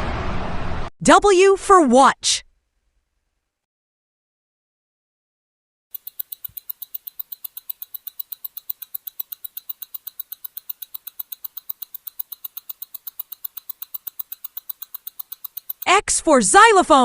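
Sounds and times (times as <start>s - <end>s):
watch ticking: 5.9s - 15.9s.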